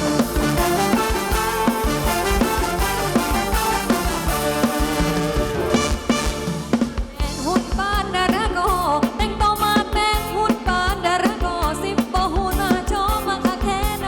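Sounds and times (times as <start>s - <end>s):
wavering lead melody: 0.0s - 6.9s
drum kit beat: 0.0s - 14.0s
live band dance music: 0.0s - 14.0s.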